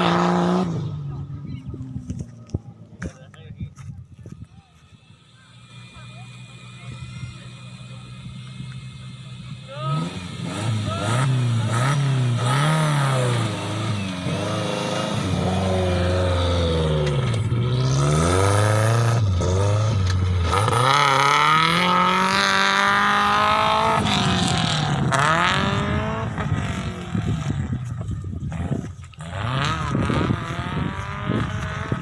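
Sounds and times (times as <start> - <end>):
off-road vehicle engine revving: 0.0 - 3.9, 4.8 - 32.0.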